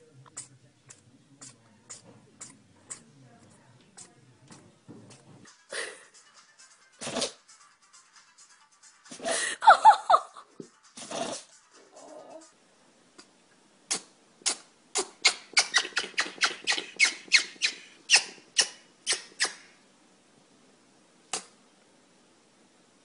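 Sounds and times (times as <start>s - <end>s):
animal sneezing: 0.4s - 3.1s, 7.0s - 7.4s, 11.0s - 11.5s, 13.9s - 19.7s.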